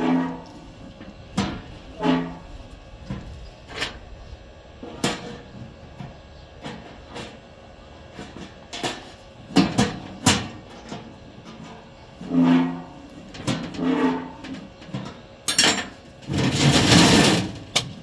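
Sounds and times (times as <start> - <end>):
metal knocks and clanks: 14.9 - 18.0.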